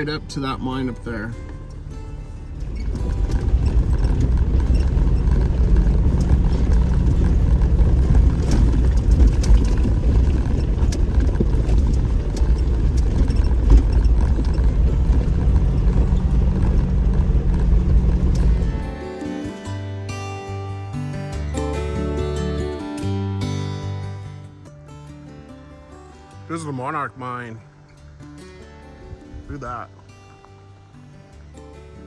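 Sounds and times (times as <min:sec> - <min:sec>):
low engine drone: 0:00.0 - 0:19.5
tyres crunching on rough ground: 0:00.0 - 0:19.6.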